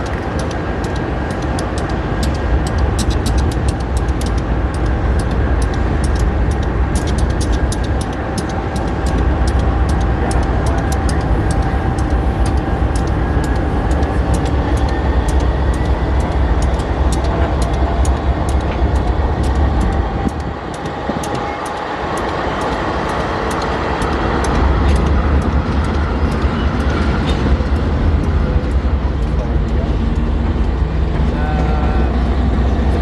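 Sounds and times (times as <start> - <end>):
freight train rolling past: 0.0 - 33.0
train wheels clicking: 0.0 - 33.0.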